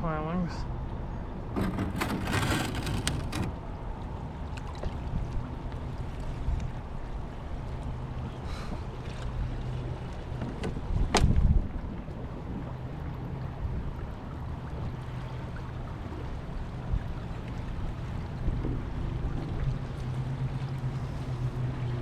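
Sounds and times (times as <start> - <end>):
water lapping: 11.8 - 22.0.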